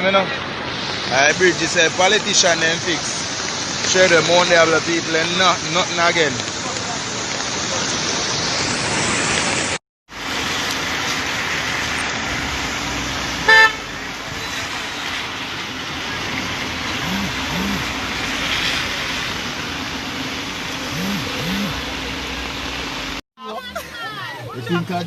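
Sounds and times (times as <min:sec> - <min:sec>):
steady rushing noise: 0:06.4 - 0:23.2
car horn toot: 0:13.4 - 0:13.9.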